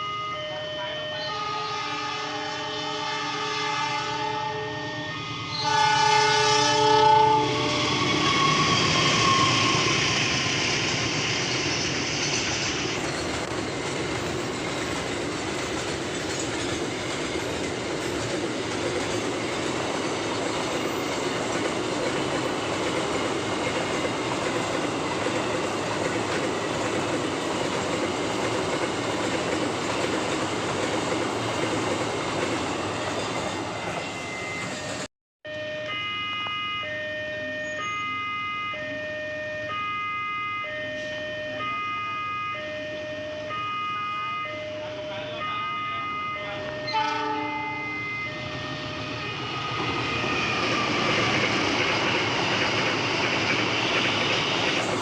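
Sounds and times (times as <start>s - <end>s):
locomotive horn: 0.0s - 10.0s, 34.2s - 50.8s
train wheels clattering: 8.5s - 35.0s.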